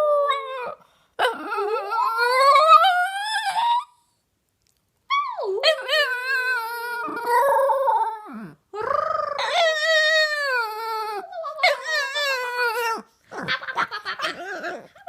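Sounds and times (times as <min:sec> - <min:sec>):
dog howling: 0:05.2 - 0:13.1.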